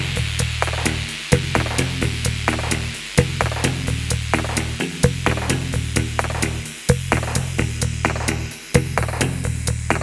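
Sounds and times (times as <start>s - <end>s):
electronic beat music: 0.0s - 10.0s.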